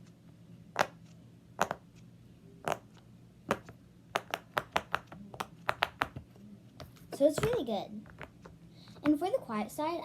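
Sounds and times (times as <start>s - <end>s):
pop-it fidget toy popping: 1.6s - 1.8s, 3.5s - 6.2s.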